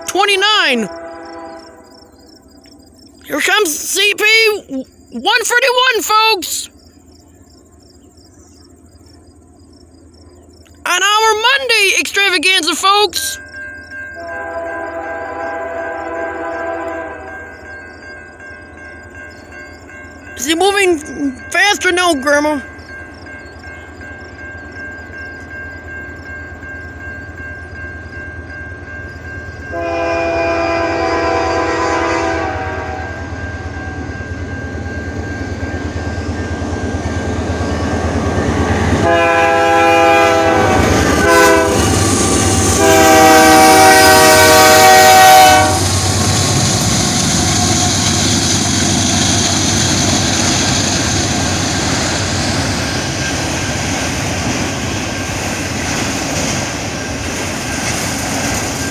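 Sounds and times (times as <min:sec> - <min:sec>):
locomotive horn blasts: 0:00.0 - 0:02.0, 0:14.2 - 0:17.7, 0:29.7 - 0:33.4, 0:39.0 - 0:42.0, 0:42.6 - 0:46.0
crossing bell ringing: 0:00.0 - 0:06.7, 0:10.7 - 0:58.9
train wheels clicking on rails: 0:40.3 - 0:58.9.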